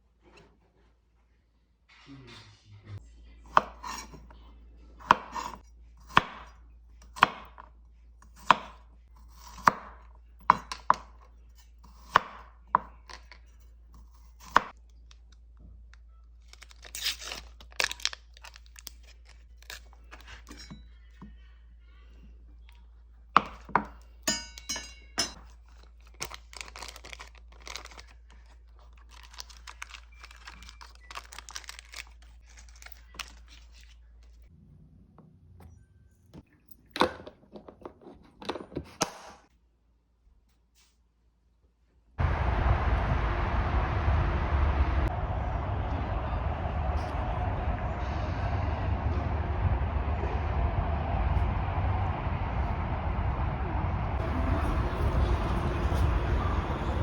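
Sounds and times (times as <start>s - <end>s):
knife chopping on cutting board: 5.0s - 6.5s, 7.2s - 7.6s, 8.4s - 11.1s, 11.9s - 12.9s.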